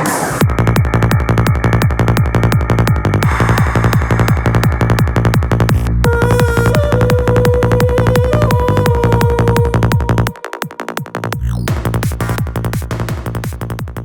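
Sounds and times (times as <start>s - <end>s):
electronic dance beat: 0.0s - 14.0s
synth sweep: 0.0s - 14.0s.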